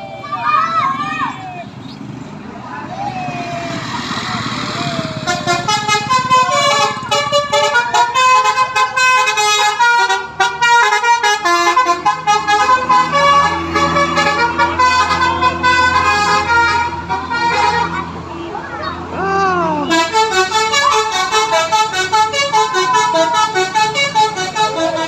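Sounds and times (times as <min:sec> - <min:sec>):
musical bus horn melody: 0:04.4 - 0:18.6, 0:19.7 - 0:25.0.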